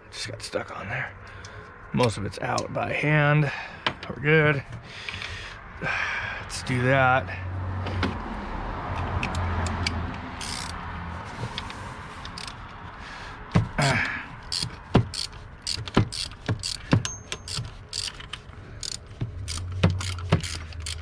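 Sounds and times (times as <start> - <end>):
socket ratchet clicking: 8.9 - 10.8, 12.3 - 12.6, 14.5 - 21.0.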